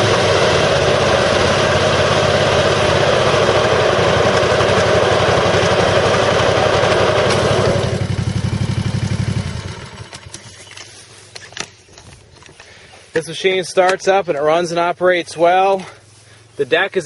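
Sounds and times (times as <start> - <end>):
mower engine running: 0.0 - 11.4.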